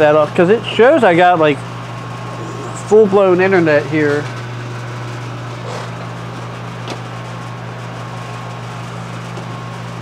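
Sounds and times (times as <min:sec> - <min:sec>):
low machine hum: 0:00.0 - 0:10.0.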